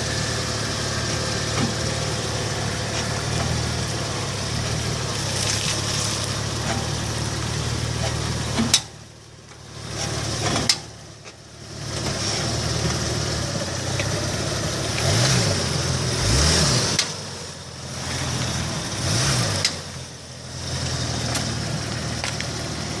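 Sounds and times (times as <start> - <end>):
car engine humming: 0.0 - 23.0
sharp clicks from car: 16.9 - 17.2, 19.5 - 19.8, 21.3 - 22.6.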